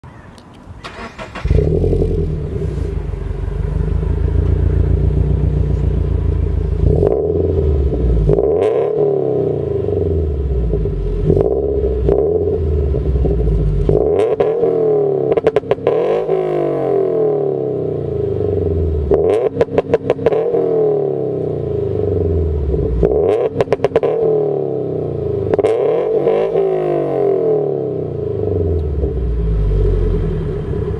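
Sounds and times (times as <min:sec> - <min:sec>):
engine revs stuttering: 0:00.8 - 0:09.4
car engine revving: 0:00.8 - 0:30.9.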